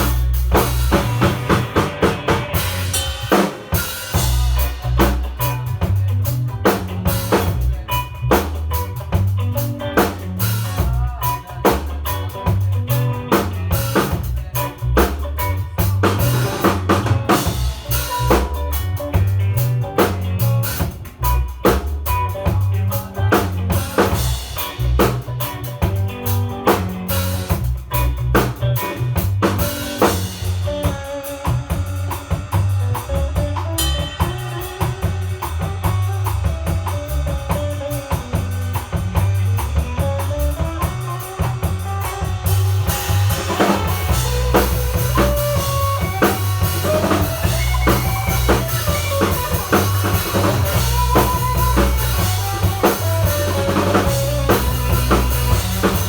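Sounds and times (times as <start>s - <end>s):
drum kit hits: 0.0s - 7.8s, 23.4s - 56.0s
steady low notes: 0.0s - 56.0s.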